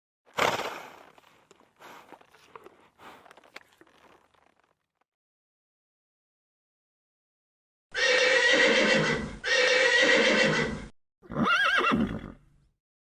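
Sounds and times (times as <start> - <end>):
horse neighing: 8.0 - 12.4.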